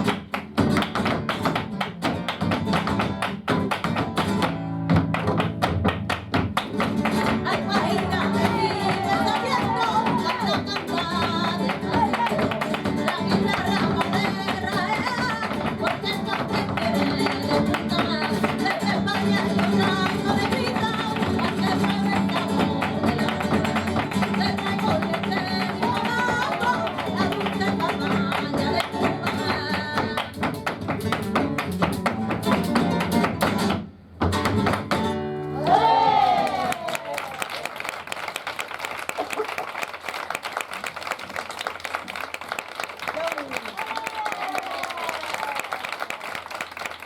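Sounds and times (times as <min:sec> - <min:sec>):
person singing: 0:07.4 - 0:30.4.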